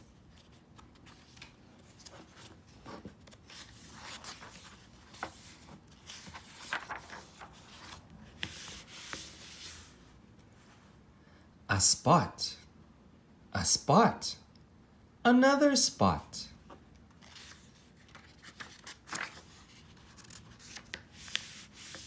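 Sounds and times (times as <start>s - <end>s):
book pages rustling: 0.1s - 10.0s, 17.0s - 22.0s.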